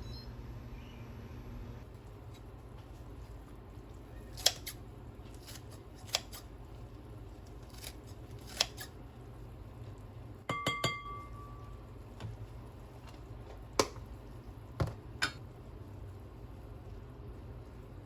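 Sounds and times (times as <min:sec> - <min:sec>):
low steady hum: 0:00.0 - 0:18.0
dish clattering and clinking: 0:10.5 - 0:11.4.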